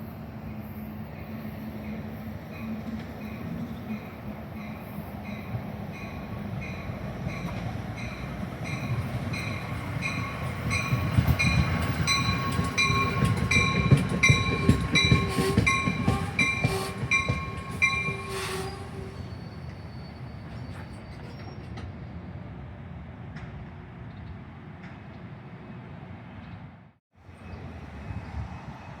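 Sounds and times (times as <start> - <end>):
train rumble: 0.0 - 26.4
train warning bell ringing: 5.3 - 19.8.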